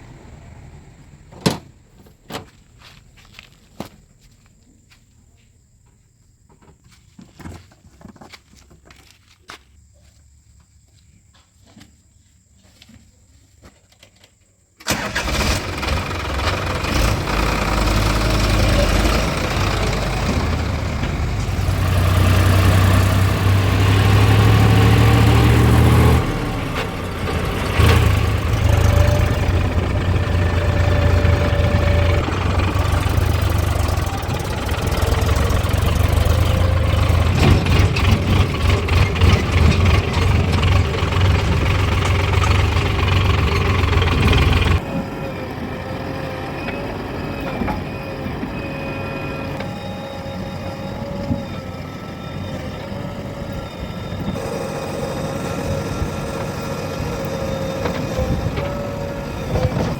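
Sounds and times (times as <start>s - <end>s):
heavy machinery diesel engine: 14.8s - 59.9s.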